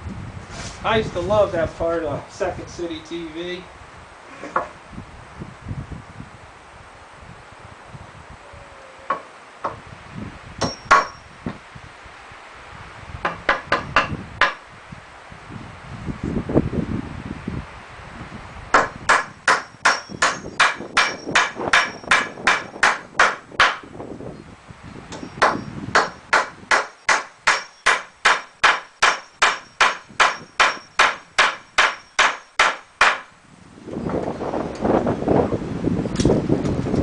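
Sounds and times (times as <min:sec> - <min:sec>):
hammer driving nails into wood: 0:10.6 - 0:11.2, 0:13.2 - 0:14.6, 0:18.7 - 0:23.8, 0:25.1 - 0:33.3.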